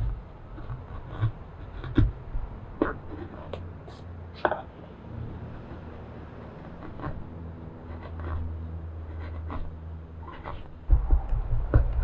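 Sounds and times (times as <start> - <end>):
steady low hum: 0.0 - 12.0
hand tool scraping wood: 5.6 - 8.5, 9.1 - 10.8.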